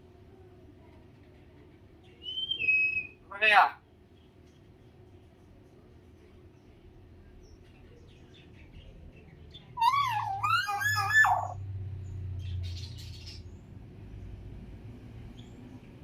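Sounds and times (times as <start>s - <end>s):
faint bird chirps: 1.9s - 3.2s, 4.1s - 13.6s
parrot warbling whistle: 2.2s - 3.2s, 9.8s - 11.6s.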